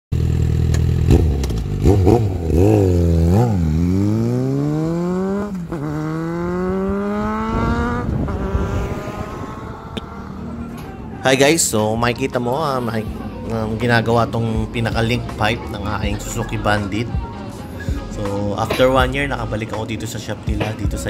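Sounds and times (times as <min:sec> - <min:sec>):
motorcycle engine revving: 0:00.1 - 0:11.2.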